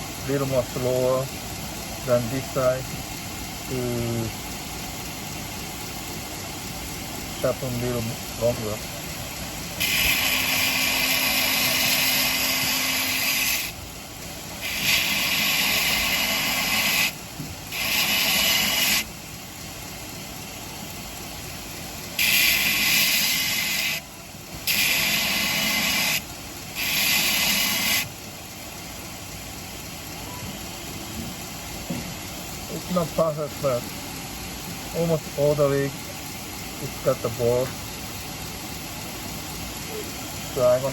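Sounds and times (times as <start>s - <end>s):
motor humming: 2.9s - 33.2s
blade grinding on sharpening wheel: 9.8s - 13.8s, 14.6s - 19.1s, 22.2s - 24.0s, 24.7s - 26.2s, 26.8s - 28.1s.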